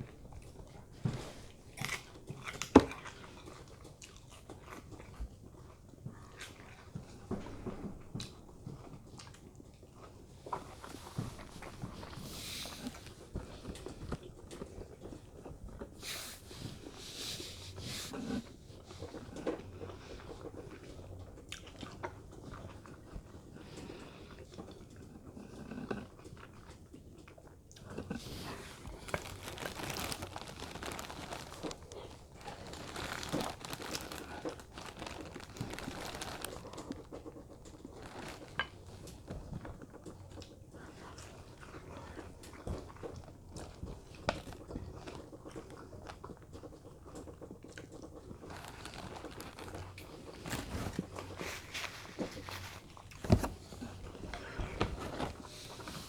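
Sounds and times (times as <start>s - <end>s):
small clicks and crackles: 0.1s - 56.0s
person biting and chewing food: 27.8s - 37.1s, 48.4s - 56.0s.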